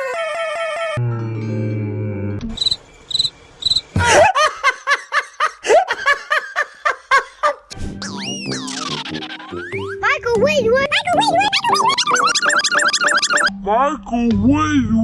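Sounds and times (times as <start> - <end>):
cricket chirping: 2.6 - 3.8
musical tones: 8.0 - 13.5
rapid jerky laughter: 8.0 - 13.5.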